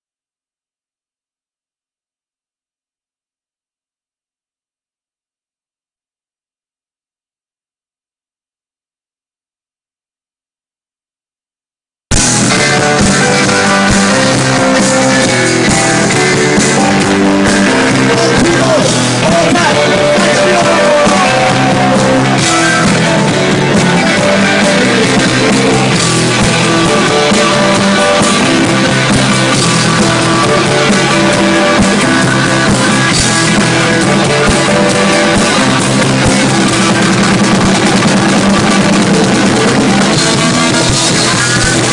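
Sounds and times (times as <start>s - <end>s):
rock band playing live: 12.1s - 41.9s.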